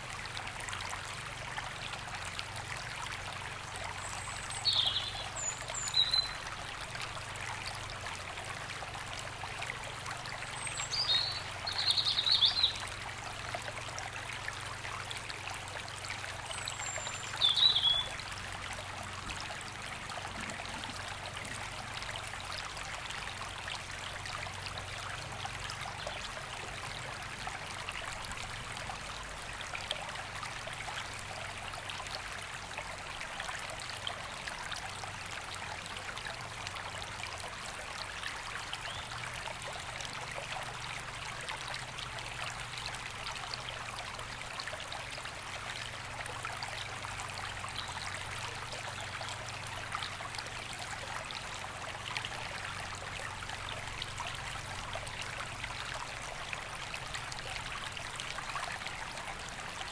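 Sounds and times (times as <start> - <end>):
river flowing: 0.0 - 59.9
bird chirping: 16.6 - 18.1.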